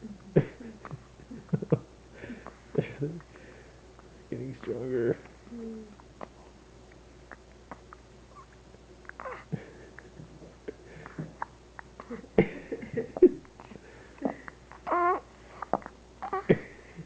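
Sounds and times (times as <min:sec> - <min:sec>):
breathy mouth sounds: 0:05.5 - 0:12.2.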